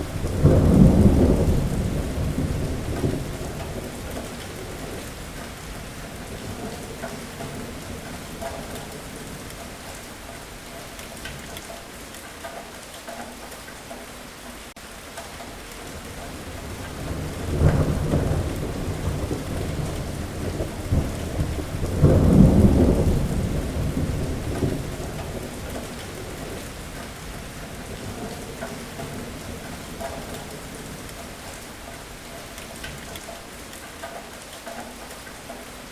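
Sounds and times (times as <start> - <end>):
thunder rumbling: 0.0 - 10.0, 15.5 - 33.1
steady rain: 0.0 - 35.9.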